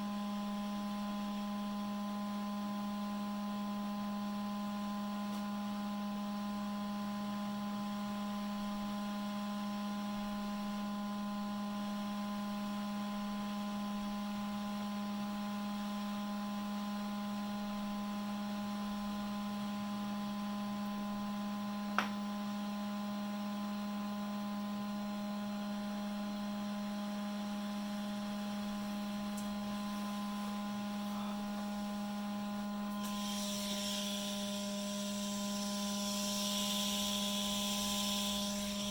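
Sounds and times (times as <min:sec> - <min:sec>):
electrical hum: 0:09.7 - 0:38.9
hiss: 0:32.9 - 0:38.9.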